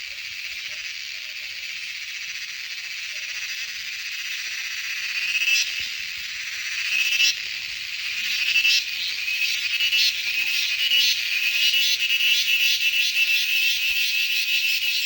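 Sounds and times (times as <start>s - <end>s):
chorus of calling animals: 0.0s - 15.0s.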